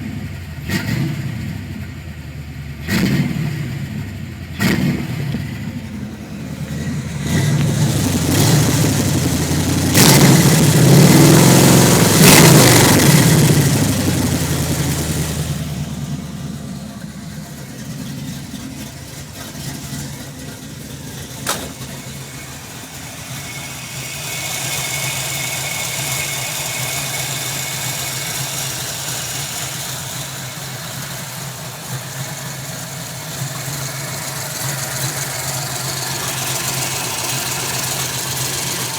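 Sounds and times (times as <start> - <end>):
car engine revving and idling: 0.0 - 38.9
sharp click: 21.4 - 22.0.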